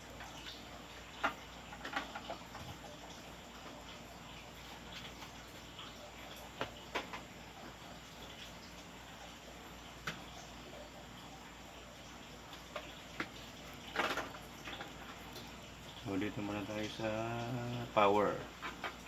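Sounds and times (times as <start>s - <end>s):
small clicks and taps: 10.0s - 10.3s, 12.5s - 15.5s.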